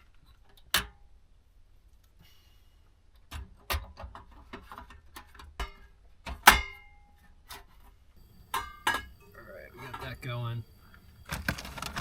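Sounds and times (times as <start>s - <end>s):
camp stove and metal pot clanking: 3.3s - 12.0s.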